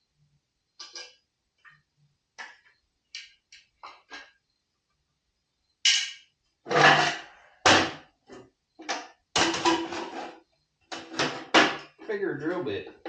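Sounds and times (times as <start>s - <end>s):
metal tools clunking and rattling: 9.4s - 11.9s.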